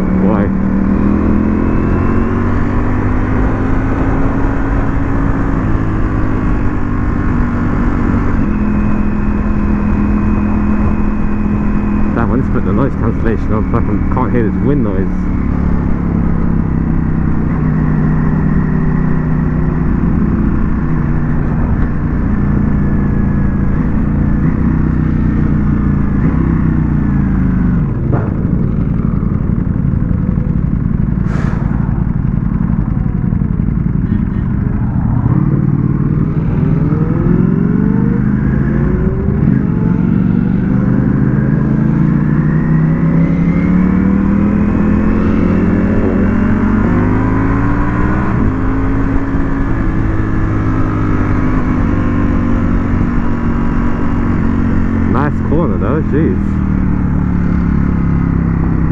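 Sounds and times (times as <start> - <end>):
motorcycle engine revving: 0.0 - 58.9
wind rushing over microphone: 26.8 - 41.0.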